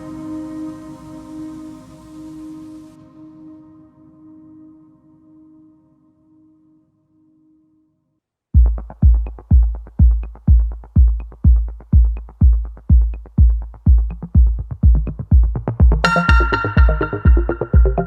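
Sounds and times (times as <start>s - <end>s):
kick drum beating: 8.6s - 18.0s
synth chord: 16.0s - 18.0s.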